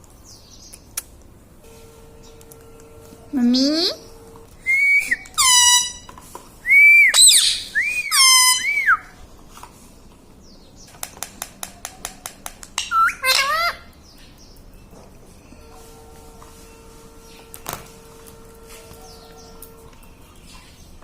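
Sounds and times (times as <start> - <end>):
parrot whistled calls: 4.6 - 6.0, 6.7 - 9.1, 12.9 - 13.8.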